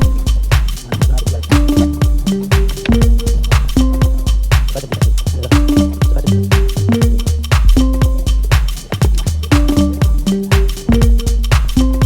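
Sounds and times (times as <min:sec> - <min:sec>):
kick drum beat: 0:00.0 - 0:12.0
held synth notes: 0:01.5 - 0:04.5.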